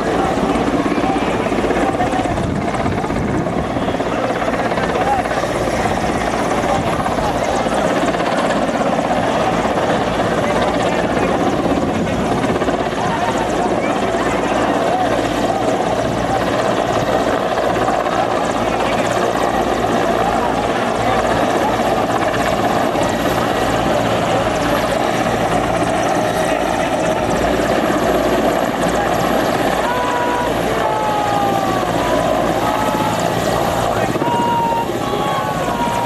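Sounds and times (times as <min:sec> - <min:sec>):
helicopter rotor and turbine: 0:00.0 - 0:36.0.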